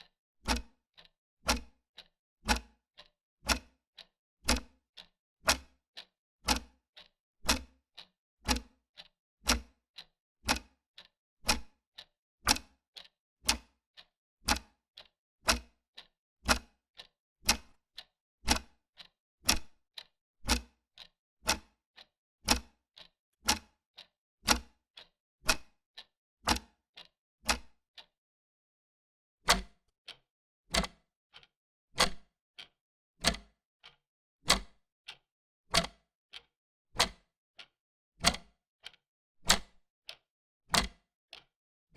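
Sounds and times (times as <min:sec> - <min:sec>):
clock ticking: 0:00.5 - 0:03.6, 0:04.5 - 0:04.7, 0:08.5 - 0:09.7, 0:16.5 - 0:17.7, 0:18.5 - 0:20.6, 0:22.5 - 0:23.7, 0:26.5 - 0:27.6, 0:35.8 - 0:36.0.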